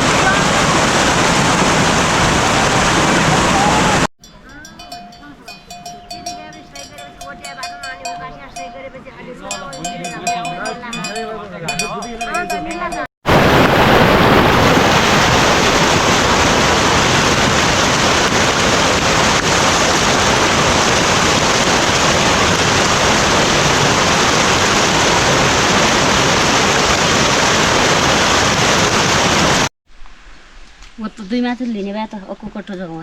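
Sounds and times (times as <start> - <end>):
loud rush of water: 0.0 - 4.1, 13.2 - 29.7.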